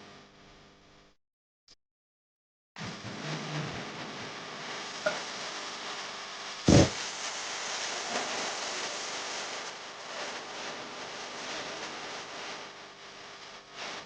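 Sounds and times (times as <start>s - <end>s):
loud short knock: 6.7s - 6.9s.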